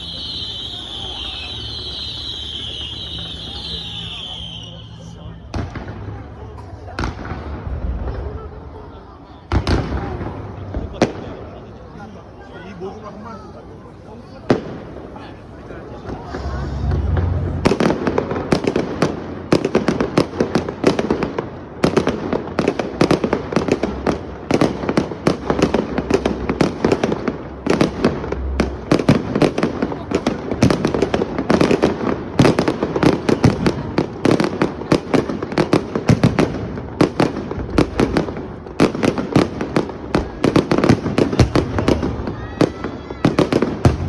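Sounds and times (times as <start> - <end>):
firework crackles: 0.0 - 44.0.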